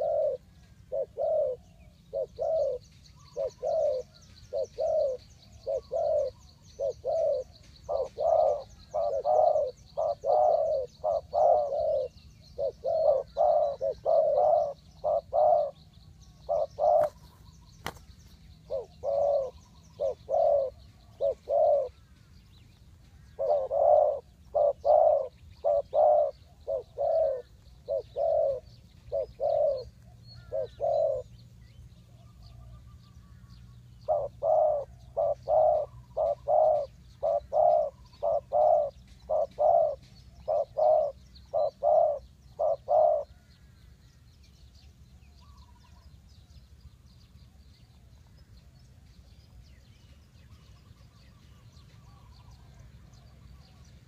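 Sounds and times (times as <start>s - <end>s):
doves cooing: 0.0s - 22.2s, 23.1s - 31.3s, 32.2s - 43.8s.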